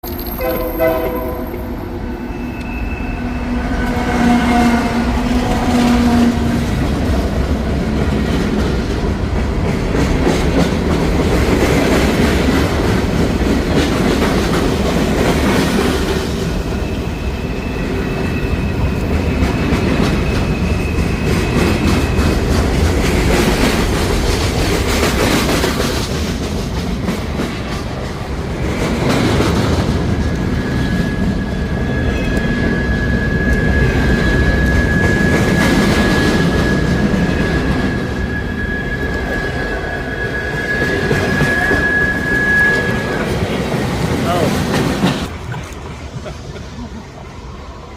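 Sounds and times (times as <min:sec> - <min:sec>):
high-pitched wheel squeal: 0:00.0 - 0:04.8, 0:16.8 - 0:22.2, 0:30.4 - 0:43.6
train wheels rumbling on rails: 0:00.0 - 0:47.9
train horn chord: 0:00.3 - 0:01.9.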